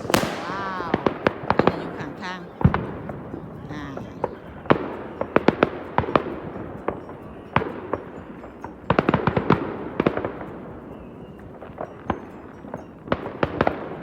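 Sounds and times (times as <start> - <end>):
fireworks bangs: 0.0 - 4.1
hiss of distant fireworks: 0.0 - 14.0.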